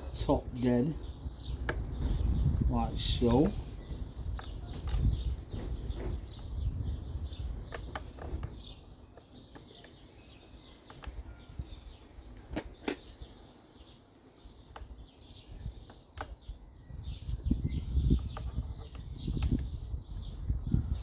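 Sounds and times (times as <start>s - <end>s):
birds chirping: 0.0s - 21.0s
clicks of engine parts handled: 12.4s - 13.3s.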